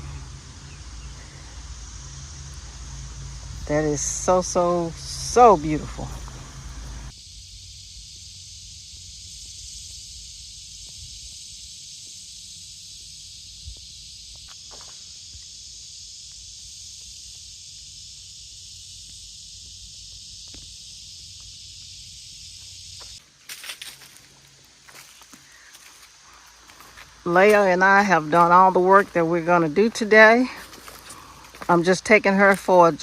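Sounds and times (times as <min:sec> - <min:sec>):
low rumble: 0:00.0 - 0:07.1
high-pitched insect chorus: 0:00.0 - 0:33.0.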